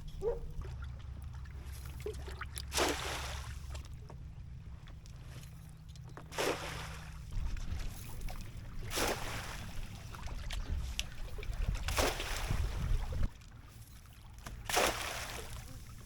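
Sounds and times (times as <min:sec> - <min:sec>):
water splashing: 0:00.0 - 0:04.0, 0:06.2 - 0:13.3, 0:14.4 - 0:16.0
wind buffeting microphone: 0:07.2 - 0:13.3.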